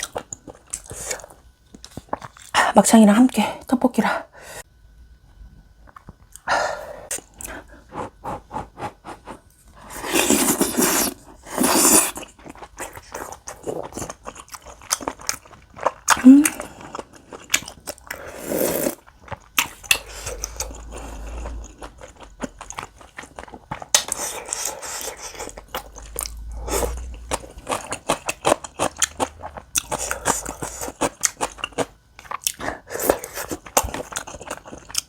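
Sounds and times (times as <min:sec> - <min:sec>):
close-up chewing: 0:00.0 - 0:02.6, 0:07.1 - 0:35.0.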